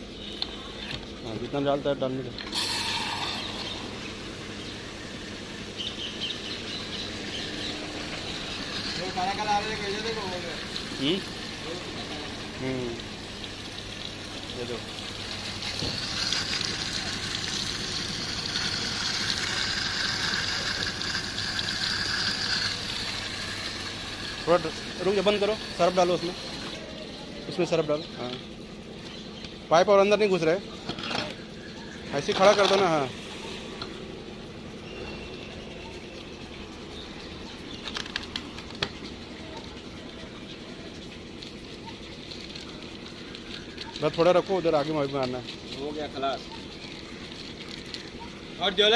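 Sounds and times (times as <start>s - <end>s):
steady low hum: 0.0s - 29.7s
water hissing through a hose: 2.4s - 27.9s, 32.1s - 38.2s, 39.0s - 48.9s.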